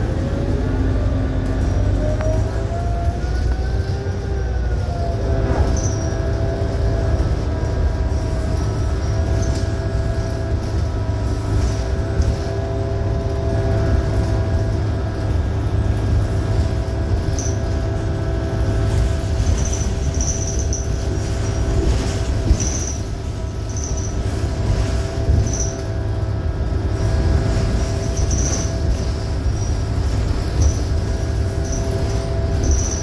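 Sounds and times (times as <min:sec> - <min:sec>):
bus engine low rumble: 0:00.0 - 0:33.0
short high-pitched squeaks: 0:05.6 - 0:06.3, 0:19.4 - 0:26.0, 0:27.8 - 0:33.0.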